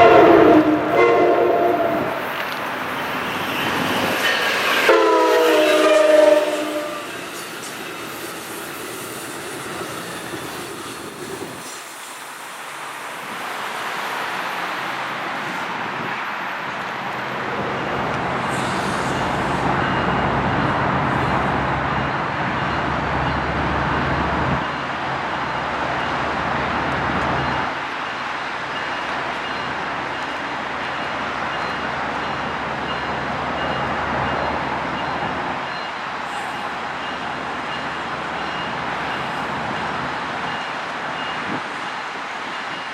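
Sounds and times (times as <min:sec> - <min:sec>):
train horn: 0:00.0 - 0:02.2, 0:04.4 - 0:07.2
train rumbling on rails: 0:00.0 - 0:42.9.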